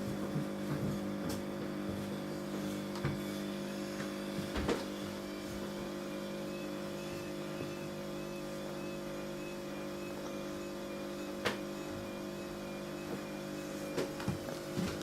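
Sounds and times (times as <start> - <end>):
electrical hum: 0.0 - 15.0.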